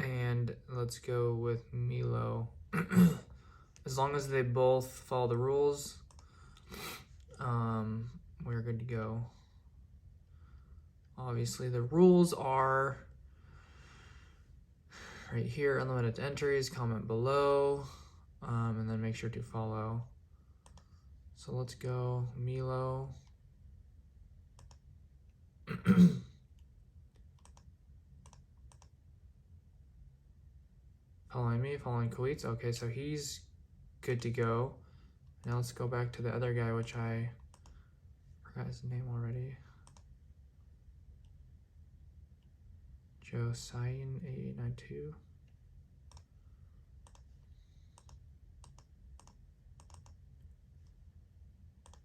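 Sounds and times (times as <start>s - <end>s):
low steady hum: 0.0s - 52.0s
man coughing: 2.7s - 3.4s, 25.7s - 26.4s
computer mouse clicks: 6.0s - 6.3s, 20.6s - 20.9s, 24.6s - 24.8s, 26.6s - 29.0s, 37.4s - 37.8s, 39.8s - 40.1s, 46.1s - 46.3s, 47.0s - 50.2s, 51.8s - 52.0s
faint keyboard typing: 20.6s - 21.0s, 24.5s - 24.9s, 26.5s - 29.0s, 37.4s - 37.8s, 39.7s - 40.1s, 45.4s - 46.4s, 47.0s - 51.0s, 51.8s - 52.0s.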